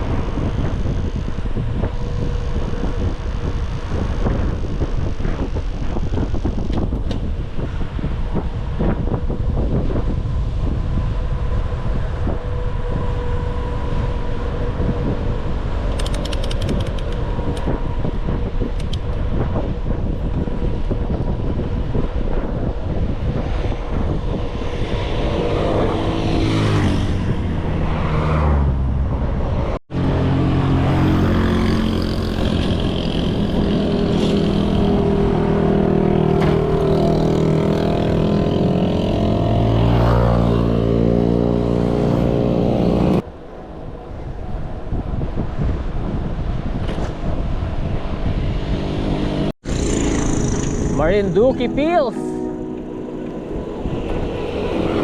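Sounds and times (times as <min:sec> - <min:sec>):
wind buffeting the microphone: 0:00.0 - 0:30.2, 0:30.8 - 0:51.5, 0:53.4 - 0:55.0
vehicle engine revving: 0:24.5 - 0:43.2, 0:47.1 - 0:55.0.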